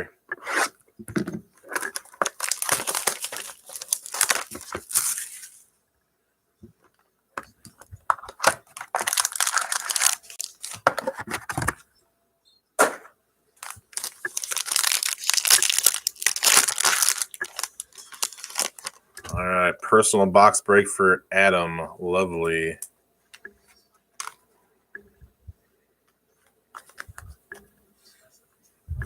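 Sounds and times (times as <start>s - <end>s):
wrapper and cardboard tearing: 1.6s - 5.6s, 8.1s - 11.8s, 13.6s - 19.0s.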